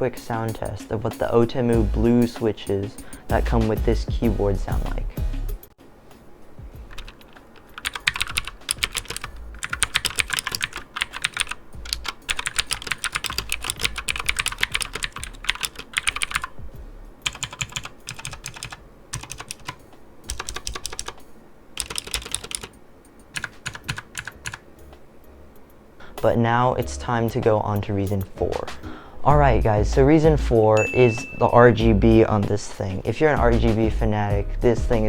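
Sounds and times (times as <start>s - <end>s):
mechanical keyboard typing clicks: 6.9s - 16.5s, 17.2s - 21.2s, 21.8s - 24.6s.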